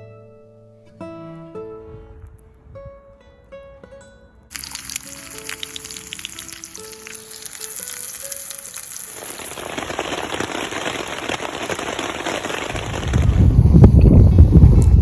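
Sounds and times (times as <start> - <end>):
wood fire crackling: 4.5 - 15.0.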